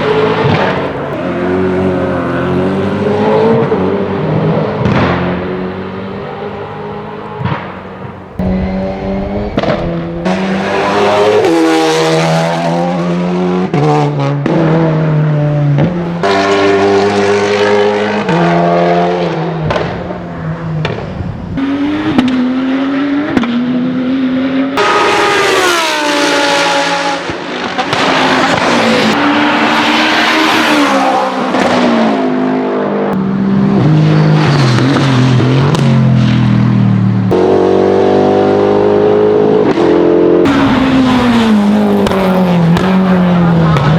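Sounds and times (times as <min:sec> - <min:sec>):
racing car engine revving: 0:00.0 - 0:36.5, 0:37.2 - 0:43.9
exhaust pops and bangs: 0:19.6 - 0:20.1.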